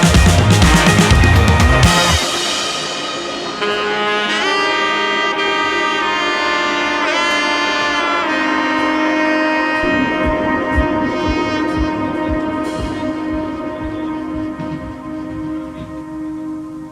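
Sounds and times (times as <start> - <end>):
loud drum passage: 0.0 - 3.9, 9.8 - 16.1.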